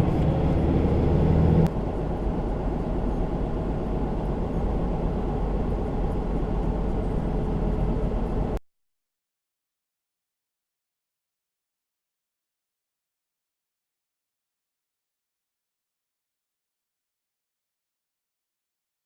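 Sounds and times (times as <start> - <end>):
vehicle engine running: 0.0 - 8.6.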